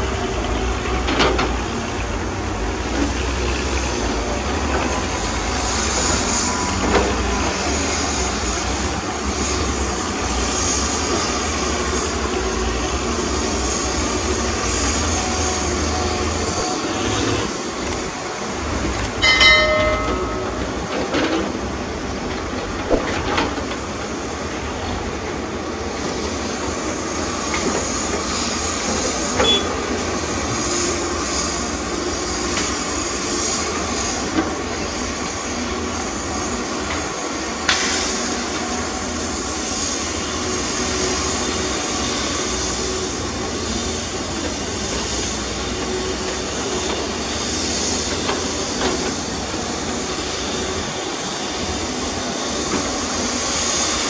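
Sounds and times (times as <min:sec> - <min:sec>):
metallic knocks and clanks: 0:19.0 - 0:20.9.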